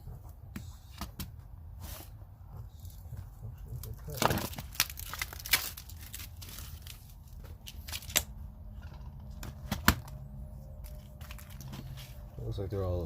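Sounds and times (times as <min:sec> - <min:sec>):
low steady hum: 0:00.0 - 0:13.0
plastic packaging crinkling: 0:03.8 - 0:08.3, 0:10.8 - 0:12.2.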